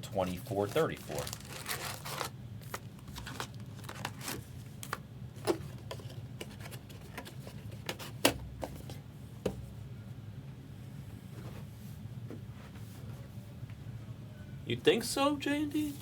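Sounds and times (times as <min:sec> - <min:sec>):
steady low hum: 0:00.0 - 0:16.0
card packs being opened: 0:00.5 - 0:07.5.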